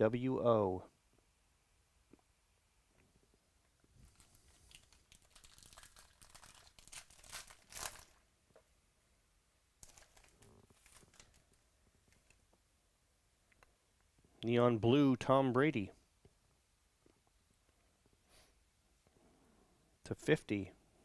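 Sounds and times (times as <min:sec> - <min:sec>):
packaging crinkling and tearing: 0:04.0 - 0:08.2, 0:09.8 - 0:12.4.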